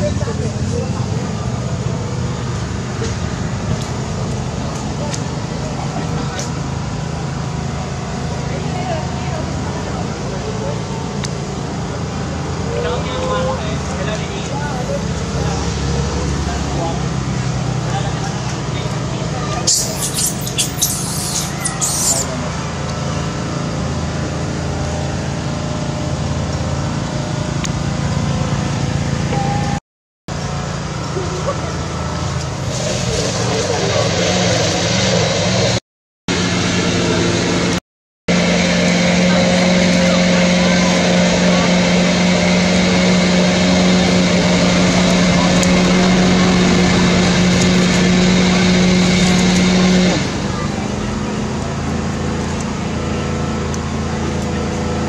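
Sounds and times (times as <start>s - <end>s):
vehicle engine hum: 0.0s - 55.0s.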